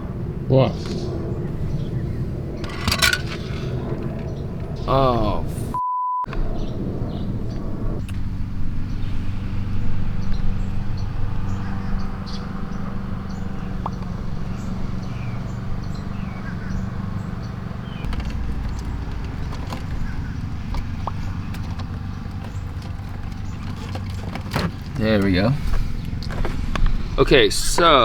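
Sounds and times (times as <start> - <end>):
engine idling: 0.0 - 28.0
faint clicks and chirps: 10.2 - 25.0.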